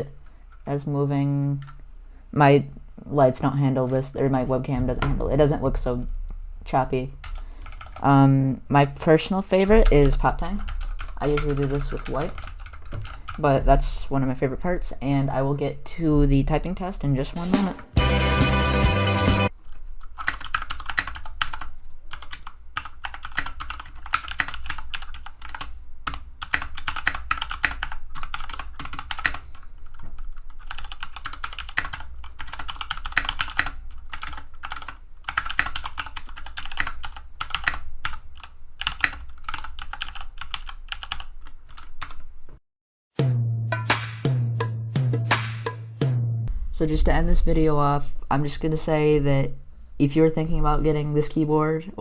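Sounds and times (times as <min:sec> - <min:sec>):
fast typing on mechanical keyboard: 0:07.2 - 0:08.1, 0:09.9 - 0:13.5, 0:20.0 - 0:42.3.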